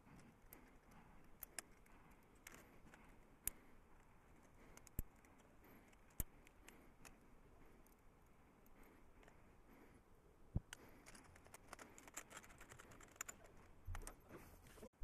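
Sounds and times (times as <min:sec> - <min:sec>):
small metal tools clicking: 0:10.7 - 0:14.1.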